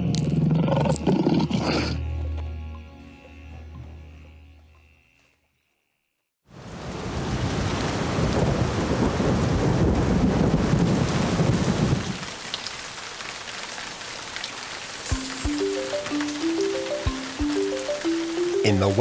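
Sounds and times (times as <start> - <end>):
pouring rain: 6.5 - 19.0
thunder rumbling: 6.9 - 12.3.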